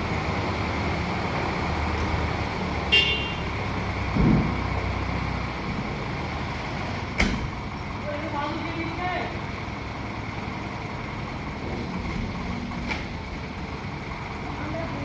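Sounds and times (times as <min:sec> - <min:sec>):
engine running: 0:00.0 - 0:15.0
low thud: 0:04.1 - 0:04.7.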